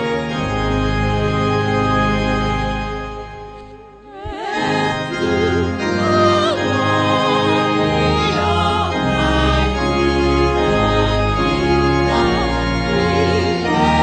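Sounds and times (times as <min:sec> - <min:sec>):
organ playing held chords: 0:00.0 - 0:14.0
people singing: 0:04.0 - 0:14.0.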